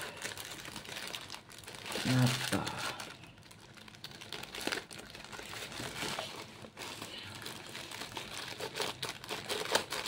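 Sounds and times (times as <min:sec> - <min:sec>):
plastic packaging crinkling: 0:00.0 - 0:10.0.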